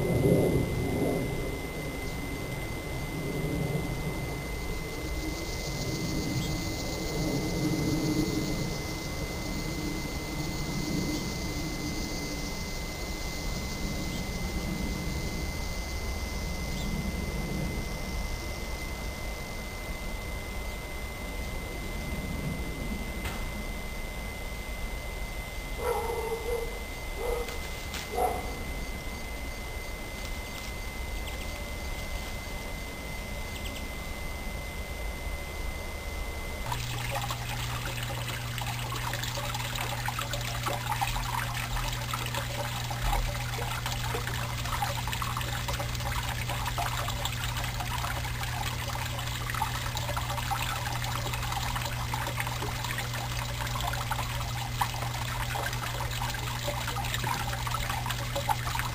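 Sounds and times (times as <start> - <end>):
high whine: 0.0 - 58.9
low steady hum: 0.0 - 58.9
water trickling and splashing: 36.7 - 58.9.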